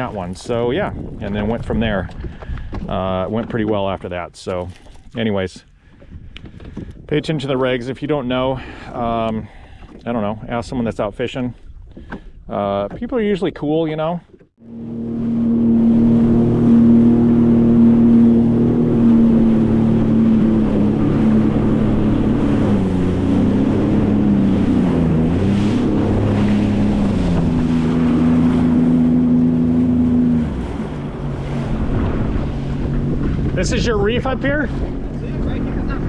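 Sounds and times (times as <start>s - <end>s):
wind buffeting microphone: 0.0s - 4.3s, 5.0s - 13.2s, 14.6s - 36.0s
jet ski engine running: 14.5s - 36.0s.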